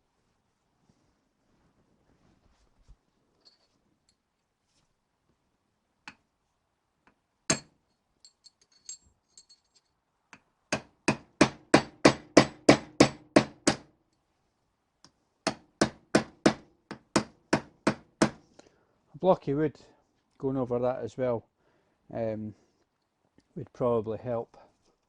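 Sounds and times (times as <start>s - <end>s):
light metallic clinks: 3.3s - 4.5s, 7.5s - 10.0s
hammer striking metal: 7.5s - 7.7s.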